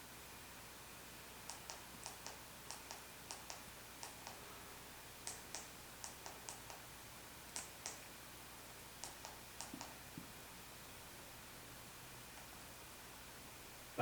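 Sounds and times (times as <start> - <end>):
faint electrical hum: 0.0 - 14.0
sharp clicks in quick pairs: 1.4 - 4.4, 5.2 - 6.8, 7.5 - 8.1, 9.0 - 10.0.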